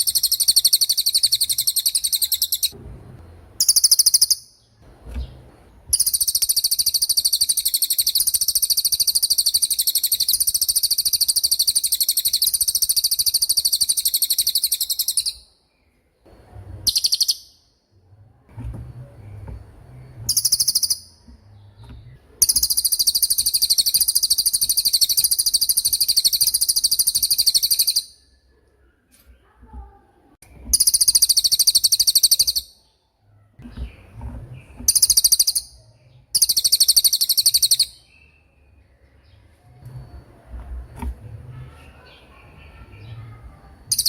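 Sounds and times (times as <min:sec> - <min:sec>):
faint low rumble: 0:02.7 - 0:03.6, 0:38.2 - 0:43.9
bird rattling trills: 0:34.9 - 0:35.7.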